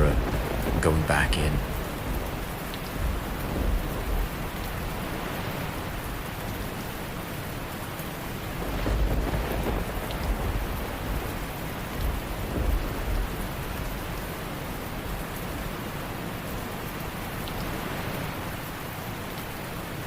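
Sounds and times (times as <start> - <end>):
thunder rolls: 0.0 - 6.4, 8.6 - 14.4
steady rain: 0.0 - 20.0.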